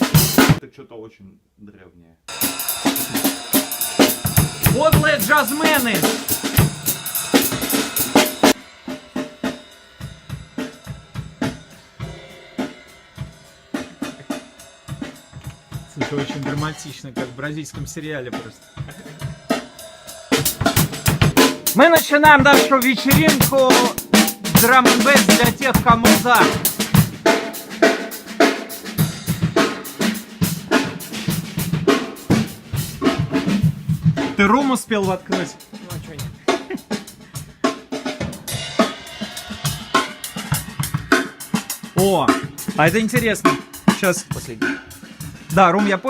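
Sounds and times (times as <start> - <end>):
drum kit playing: 0.0 - 0.6, 2.3 - 46.0
cymbal hits: 2.3 - 15.9, 18.6 - 21.8
bass drum strokes: 3.9 - 8.6.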